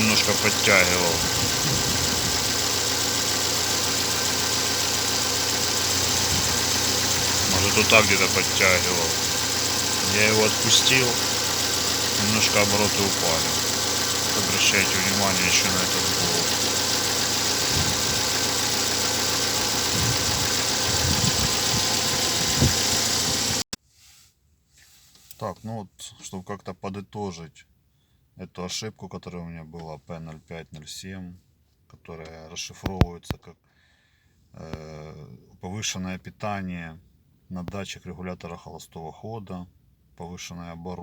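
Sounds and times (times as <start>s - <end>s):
car engine idling: 0.0s - 23.6s.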